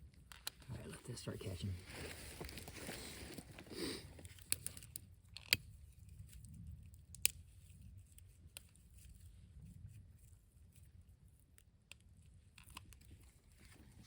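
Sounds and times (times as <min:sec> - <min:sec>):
small fire crackling: 0:00.0 - 0:10.1.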